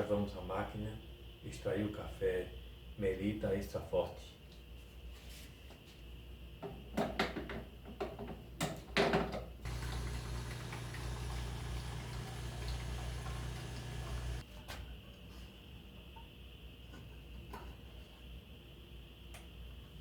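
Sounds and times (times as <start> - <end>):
coffee pouring: 9.7 - 14.4
espresso machine pump humming: 9.7 - 14.4.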